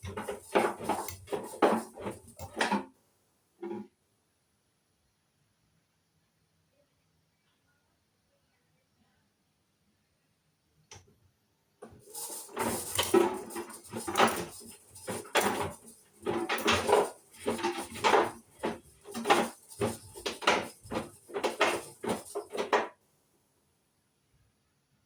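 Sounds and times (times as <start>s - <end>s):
washing machine drum turning: 0.0s - 2.9s, 12.0s - 22.9s.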